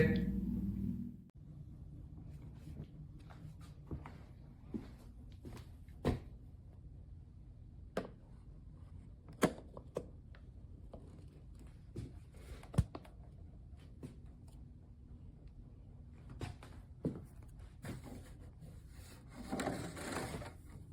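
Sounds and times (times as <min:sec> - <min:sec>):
low steady hum: 0:00.0 - 0:09.4.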